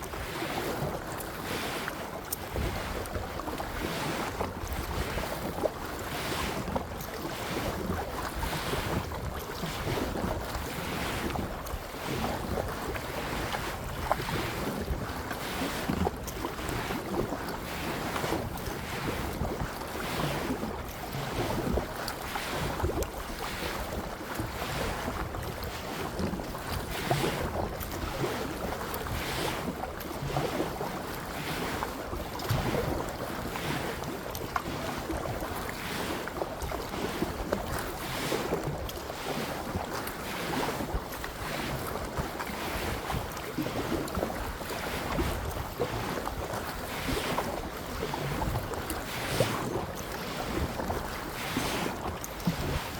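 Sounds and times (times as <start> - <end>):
running water: 0.0 - 40.2
paddle splashing in water: 0.0 - 52.9.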